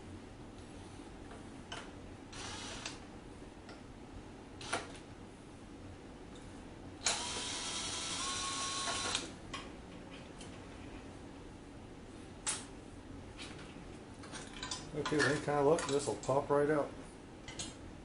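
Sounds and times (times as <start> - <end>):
electric driver whirring: 2.3 - 3.0, 4.6 - 4.9, 7.0 - 9.3.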